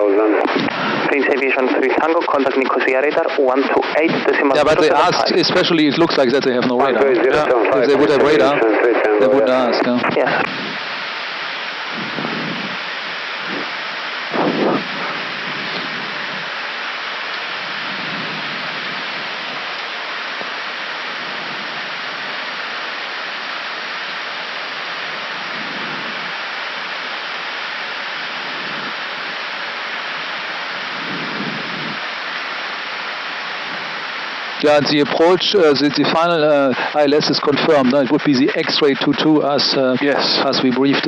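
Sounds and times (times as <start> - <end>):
cockpit air rushing: 10.3 - 22.8.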